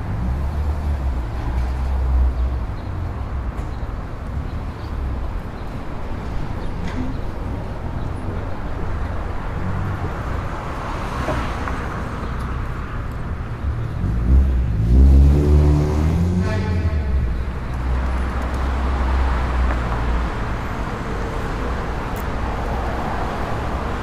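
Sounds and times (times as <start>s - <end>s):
traffic rumble of engines and tyres: 0.0s - 24.0s
vehicle engine revving: 14.0s - 16.9s.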